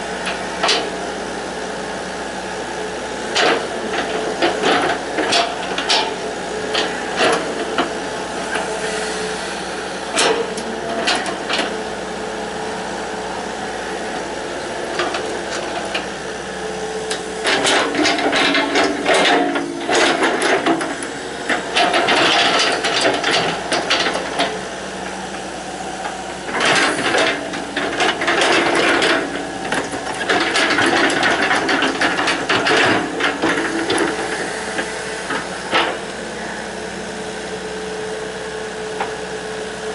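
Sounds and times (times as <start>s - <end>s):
excavator diesel engine running: 0.0s - 39.9s
rattling and grinding while digging: 3.2s - 8.7s, 10.0s - 36.3s.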